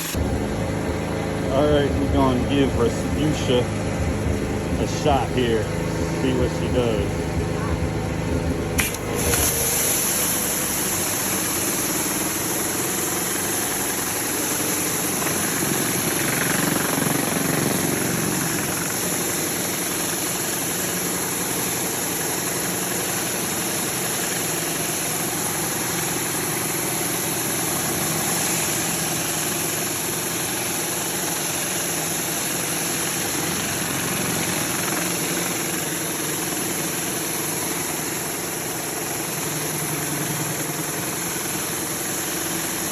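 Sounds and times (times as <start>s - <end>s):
pressure washer engine running: 0.0s - 42.9s
water spraying onto concrete: 8.8s - 42.9s.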